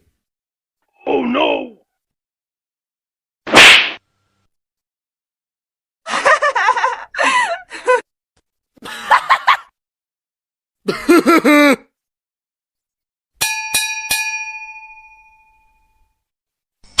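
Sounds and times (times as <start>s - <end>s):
metallic ding strikes: 13.4s - 16.0s.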